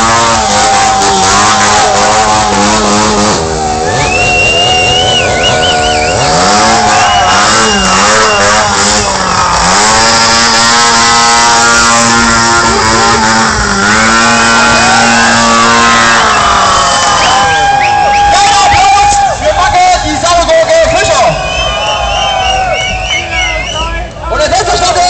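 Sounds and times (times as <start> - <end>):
chainsaw engine at high revs: 0.0 - 17.8.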